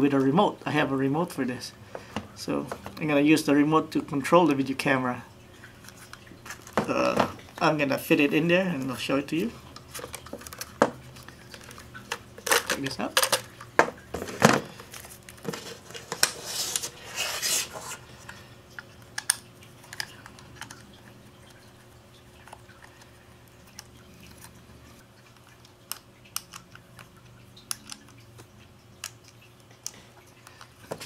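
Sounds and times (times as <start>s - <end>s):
rustling scrape of plastic housing: 14.2s - 18.0s.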